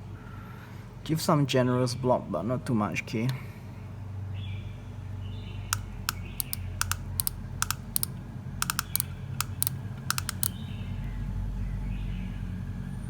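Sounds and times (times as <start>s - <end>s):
soldering gun trigger clicks: 5.8s - 10.6s.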